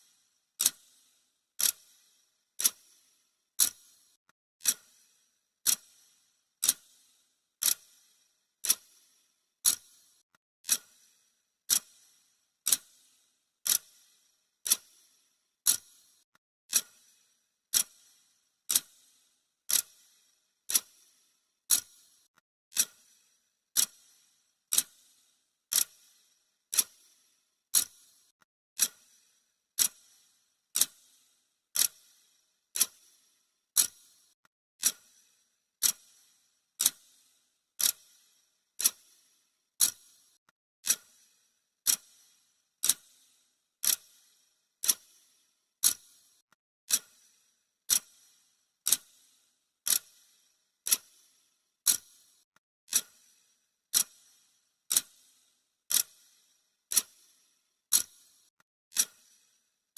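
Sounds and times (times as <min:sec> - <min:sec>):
high-pitched clock ticks: 0:00.6 - 0:00.9, 0:01.6 - 0:02.0, 0:02.6 - 0:05.0, 0:05.6 - 0:07.0, 0:07.6 - 0:08.0, 0:08.6 - 0:11.0, 0:11.6 - 0:12.0, 0:12.6 - 0:13.0, 0:13.6 - 0:14.0, 0:14.6 - 0:15.0, 0:15.6 - 0:17.0, 0:17.7 - 0:19.0, 0:19.7 - 0:20.1, 0:20.7 - 0:21.1, 0:21.7 - 0:23.1, 0:23.7 - 0:24.1, 0:24.7 - 0:25.0, 0:25.7 - 0:26.1, 0:26.7 - 0:29.2, 0:29.8 - 0:31.2, 0:31.8 - 0:33.2, 0:33.8 - 0:37.2, 0:37.8 - 0:38.2, 0:38.8 - 0:39.2, 0:39.8 - 0:41.2, 0:41.8 - 0:43.2, 0:43.8 - 0:45.2, 0:45.8 - 0:47.3, 0:47.9 - 0:49.2, 0:49.9 - 0:50.2, 0:50.8 - 0:51.3, 0:51.9 - 0:55.3, 0:55.9 - 0:56.3, 0:56.9 - 0:59.3.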